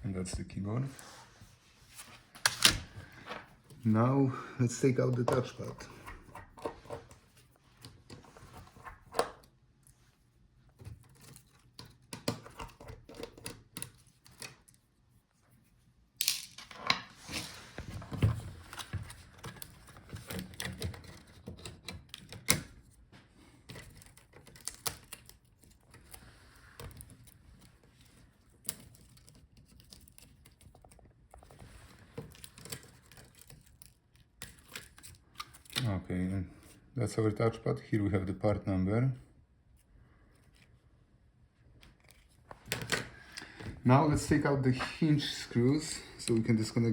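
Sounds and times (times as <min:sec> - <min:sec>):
clicks and taps of tools and plastic: 0:10.8 - 0:14.8, 0:18.1 - 0:22.8, 0:41.8 - 0:43.7.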